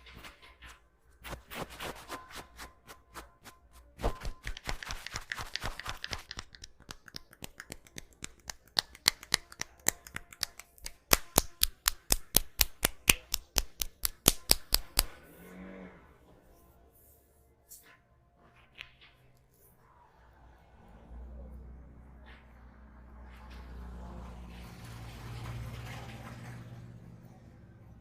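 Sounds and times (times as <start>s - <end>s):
hands slapping in massage strokes: 4.0s - 15.2s.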